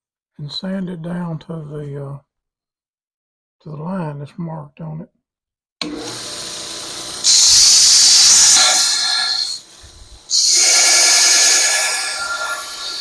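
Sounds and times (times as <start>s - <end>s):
power sander grinding steel: 5.8s - 13.0s.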